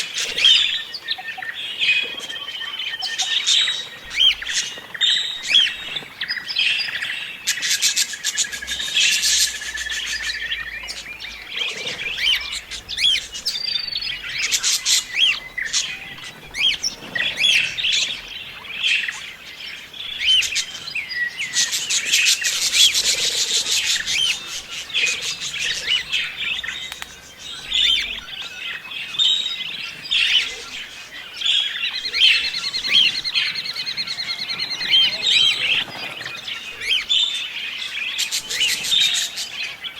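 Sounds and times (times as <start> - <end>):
budgerigars chirping and warbling: 0.0 - 39.9.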